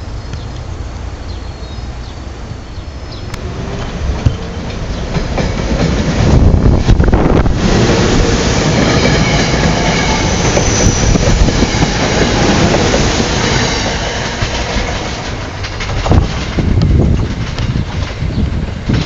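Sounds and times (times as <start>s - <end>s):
train wheels on rails: 0.0s - 19.0s
high wheel squeal: 8.8s - 12.5s.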